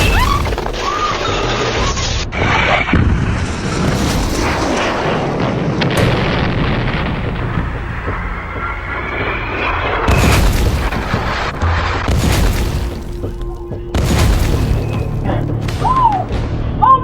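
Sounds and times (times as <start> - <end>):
explosion rumbling boom: 2.9 - 16.4.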